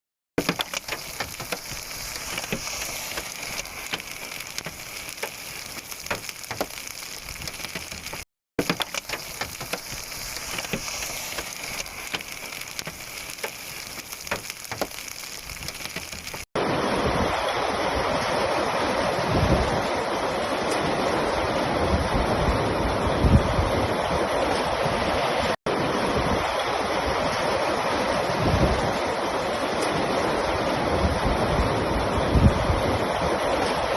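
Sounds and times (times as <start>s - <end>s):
rain drops ticking on hard surfaces: 0.4s - 16.5s.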